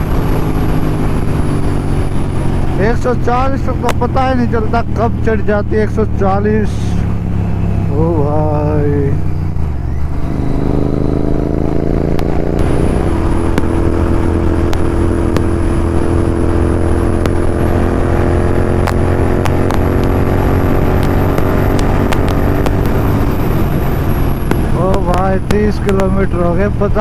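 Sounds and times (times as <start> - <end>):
wind rumble on microphone: 0.0 - 5.0, 10.4 - 27.0
motorcycle engine at speed: 0.0 - 27.0.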